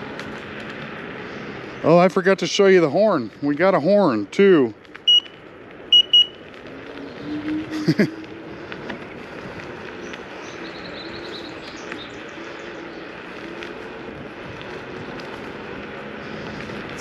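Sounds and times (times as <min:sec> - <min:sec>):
scooter hum and rolling noise: 0:00.0 - 0:17.0
scooter horn beeps: 0:05.1 - 0:06.4.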